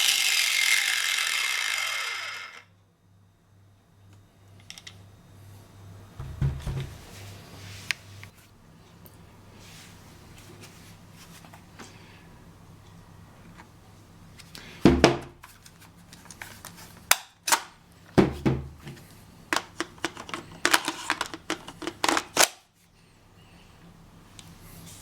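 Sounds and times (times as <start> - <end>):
heavier knocks: 6.2 - 7.0.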